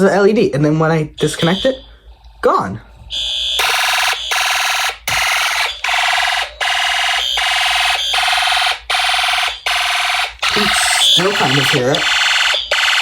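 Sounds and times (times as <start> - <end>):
high steady beep: 1.2 - 1.9, 9.3 - 13.0
fire alarm horn buzzing: 1.2 - 2.0, 3.1 - 13.0.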